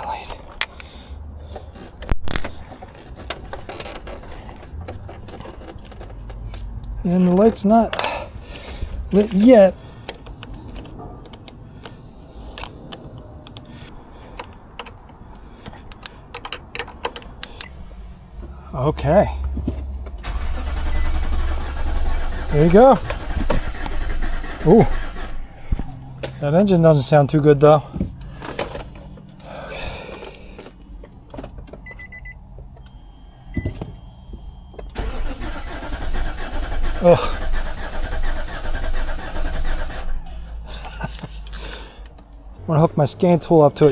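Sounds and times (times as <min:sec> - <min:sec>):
car engine idling: 0:00.0 - 0:43.9
hands clicking and tapping parts: 0:00.1 - 0:17.7, 0:27.8 - 0:33.0
electronic beeps: 0:31.8 - 0:35.0.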